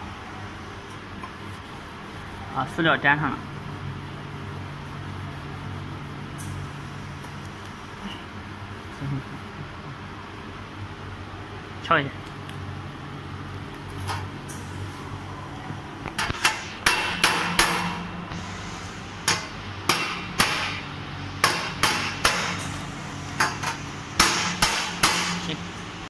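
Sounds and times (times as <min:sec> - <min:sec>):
steady low hum: 0:00.0 - 0:26.0
hammer on steel sheet: 0:16.2 - 0:18.1, 0:19.3 - 0:20.8, 0:21.4 - 0:22.6, 0:23.4 - 0:25.5.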